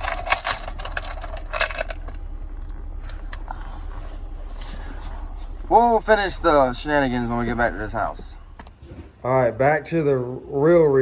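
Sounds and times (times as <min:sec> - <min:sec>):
small metal items clinking: 0:00.0 - 0:02.2
steady low hum: 0:00.0 - 0:11.0.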